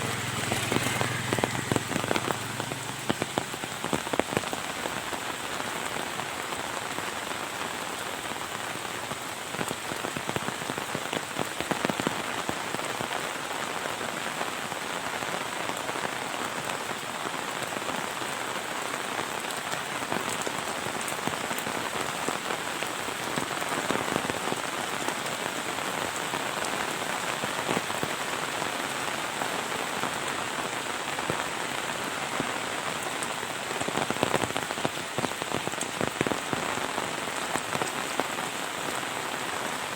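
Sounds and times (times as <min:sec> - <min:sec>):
close raindrop impacts: 0:00.0 - 0:13.7
heavy rain: 0:00.0 - 0:39.9.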